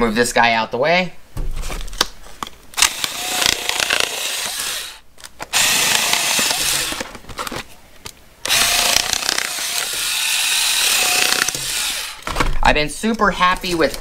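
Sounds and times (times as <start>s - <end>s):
crackling and scraping plastic: 5.2s - 10.1s, 10.9s - 12.6s.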